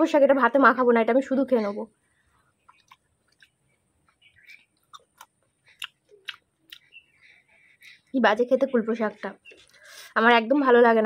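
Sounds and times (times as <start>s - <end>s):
wet chewing mouth clicks: 2.6s - 7.0s.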